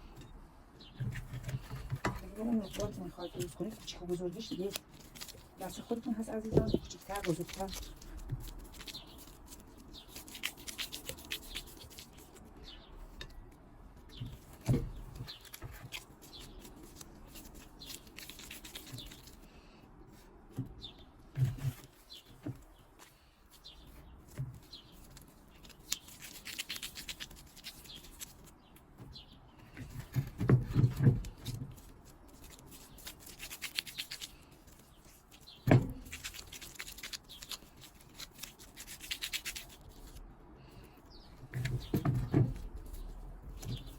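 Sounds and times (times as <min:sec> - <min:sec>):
hands rubbing and scraping dough: 0:00.9 - 0:12.6, 0:14.1 - 0:19.5, 0:21.3 - 0:28.6, 0:29.7 - 0:40.2.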